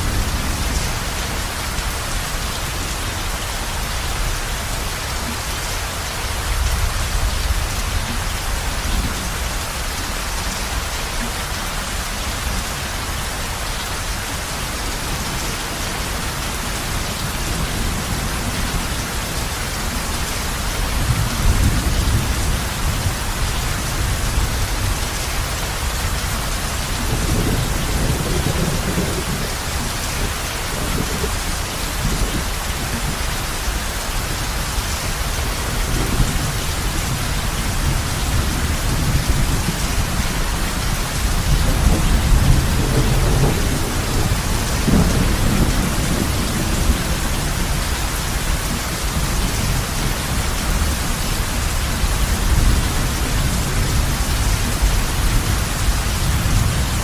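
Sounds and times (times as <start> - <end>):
heavy rain on a roof: 0.0 - 57.0
rolling thunder: 35.8 - 47.8.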